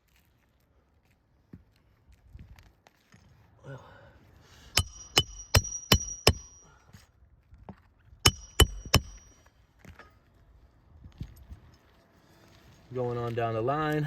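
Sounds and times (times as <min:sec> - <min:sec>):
hammer striking metal: 0:04.8 - 0:06.7, 0:08.3 - 0:09.4.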